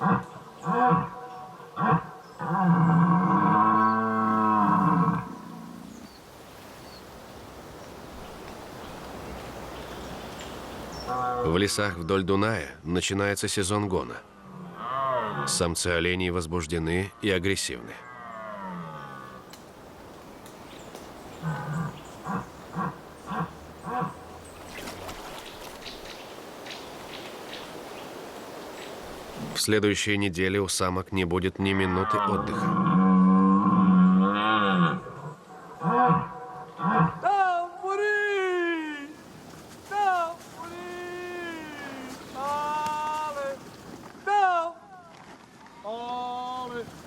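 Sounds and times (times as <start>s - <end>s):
deer roaring: 1.8s - 6.0s, 14.3s - 15.6s, 21.4s - 24.4s, 31.9s - 37.3s
deer stag calling: 21.3s - 24.4s.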